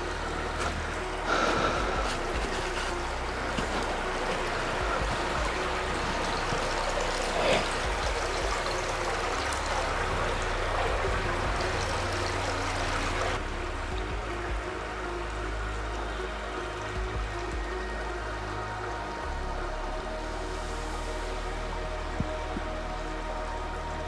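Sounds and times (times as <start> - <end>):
stream water rushing: 0.0 - 24.0
wind rumble on microphone: 0.0 - 24.0.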